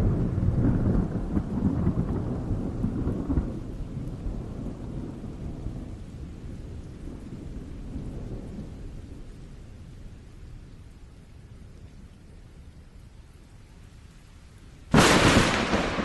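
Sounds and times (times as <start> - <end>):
rolling thunder: 0.0 - 9.6, 14.9 - 16.0.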